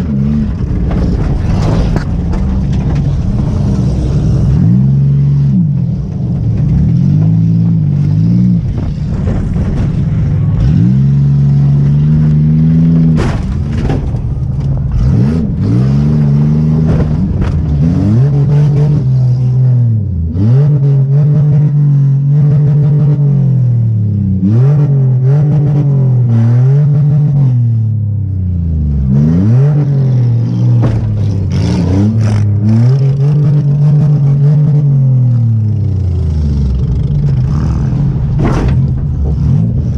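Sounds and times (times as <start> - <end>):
car engine revving: 0.0 - 39.9
rattles and knocks: 0.5 - 11.0, 11.7 - 18.5, 30.5 - 32.5, 37.2 - 39.9.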